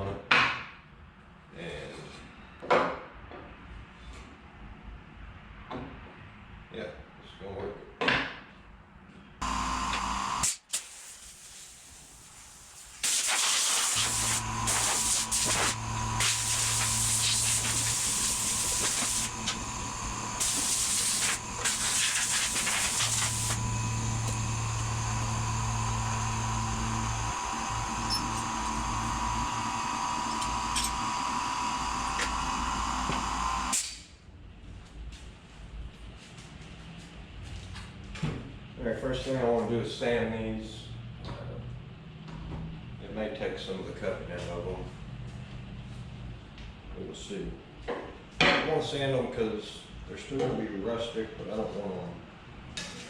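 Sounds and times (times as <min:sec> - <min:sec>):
power tool hissing and whining: 0:09.4 - 0:10.8, 0:13.0 - 0:33.8.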